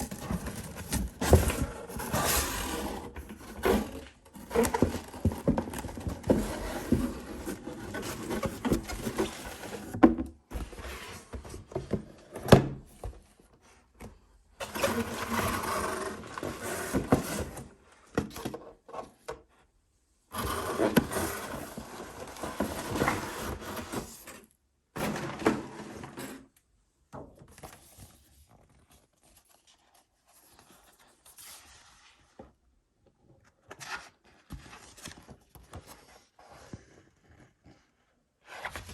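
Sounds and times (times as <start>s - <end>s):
packaging rustling and scraping: 0.0s - 12.0s, 20.4s - 26.5s.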